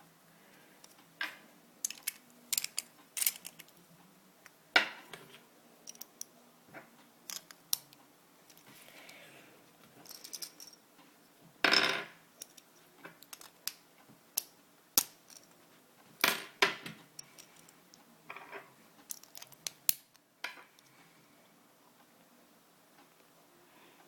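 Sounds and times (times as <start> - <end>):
plastic toy parts clicking: 1.8 - 3.8, 7.3 - 8.6, 13.2 - 13.8, 19.1 - 20.2.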